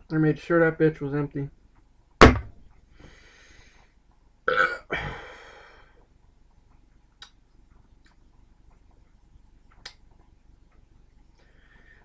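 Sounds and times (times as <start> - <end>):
faint breathing: 2.9 - 4.0, 4.9 - 6.1, 11.4 - 12.0.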